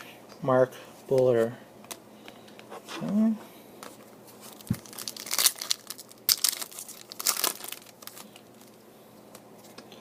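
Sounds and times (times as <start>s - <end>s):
foil wrapper crinkling and tearing: 4.4s - 8.8s.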